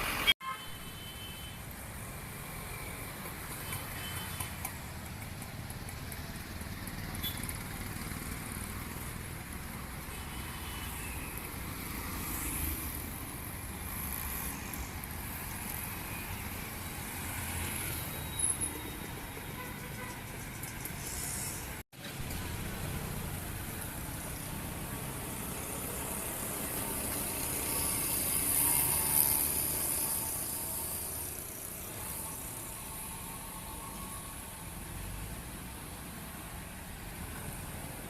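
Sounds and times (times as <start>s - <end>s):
passing vehicle engines: 1.9s - 38.0s.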